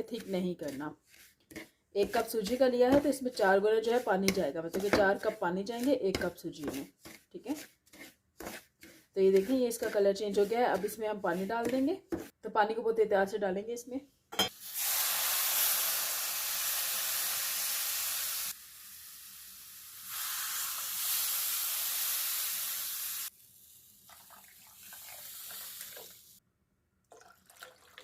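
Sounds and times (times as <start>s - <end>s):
water sizzling in hot pan: 14.5s - 26.4s.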